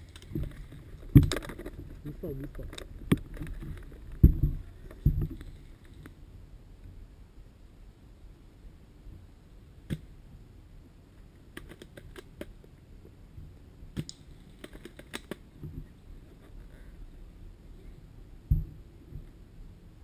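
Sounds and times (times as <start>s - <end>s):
low background rumble: 0.0s - 20.0s
sharp clicks and snaps: 11.6s - 12.5s, 14.0s - 15.4s.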